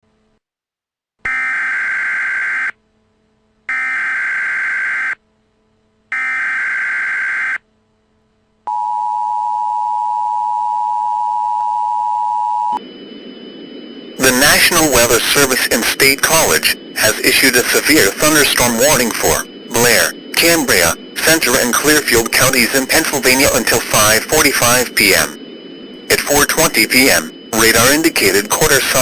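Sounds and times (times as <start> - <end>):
two-tone attention signal: 8.7 - 29.0
digital data header bursts: 14.2 - 29.0.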